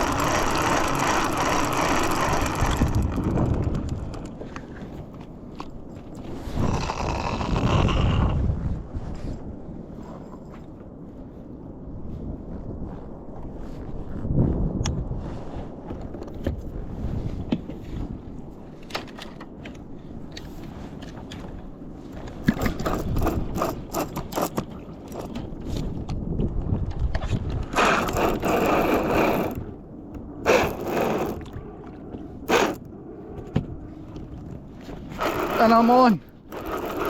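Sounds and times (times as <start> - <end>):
fishing reel cranking: 0.0 - 4.2, 6.6 - 8.2, 22.5 - 25.4, 27.7 - 29.6, 30.4 - 31.6, 32.5 - 32.9, 35.1 - 37.0
reel gear clicks and scrapes: 0.0 - 8.4, 18.7 - 26.1, 27.1 - 29.7, 30.4 - 31.6, 32.5 - 32.9, 34.2 - 37.0.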